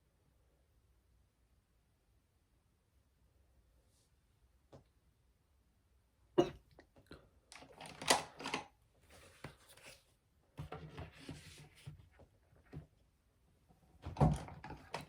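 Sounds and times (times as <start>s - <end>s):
woman hiccuping: 6.4s - 6.7s.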